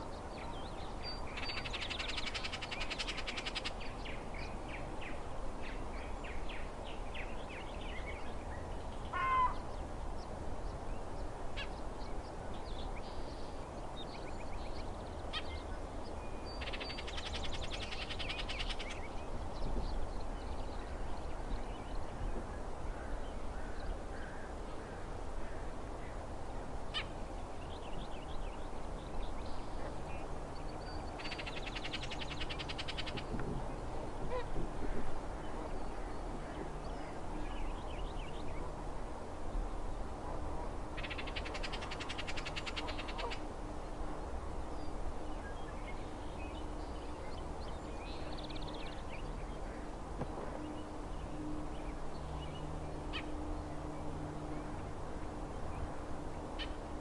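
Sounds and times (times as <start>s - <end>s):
bird chatter calls: 0.0s - 6.6s, 16.5s - 19.7s, 29.3s - 33.3s.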